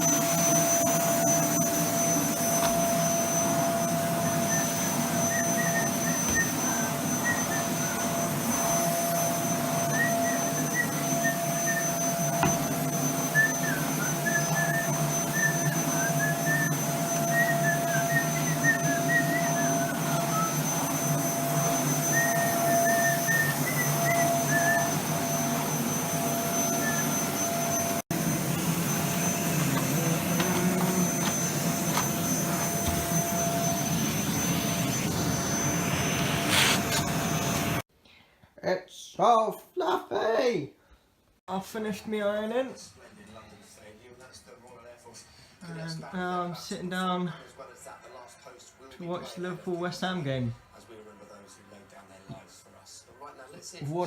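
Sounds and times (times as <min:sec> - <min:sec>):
vacuum cleaner motor running: 0:00.0 - 0:37.9.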